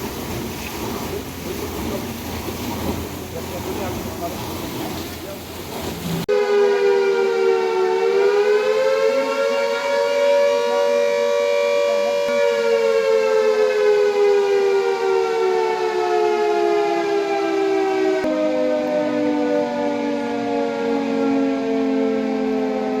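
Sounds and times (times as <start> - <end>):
warning siren wailing: 6.3 - 23.0.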